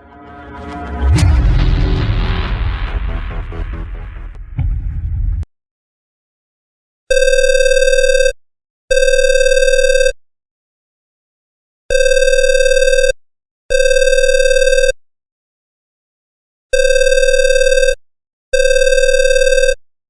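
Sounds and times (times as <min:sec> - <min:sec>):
electronic phone ringing: 0:07.1 - 0:08.3, 0:08.9 - 0:10.1, 0:11.9 - 0:13.1, 0:13.7 - 0:14.9, 0:16.8 - 0:18.0, 0:18.6 - 0:19.8.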